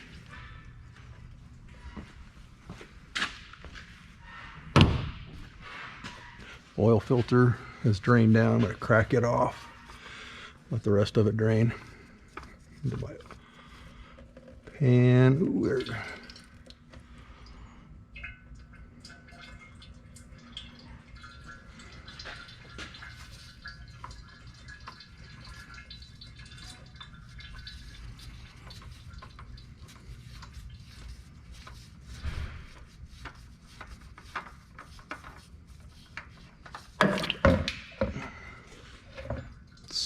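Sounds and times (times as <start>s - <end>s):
oil dripping into a pan: 11.7s - 32.0s, 39.4s - 40.0s.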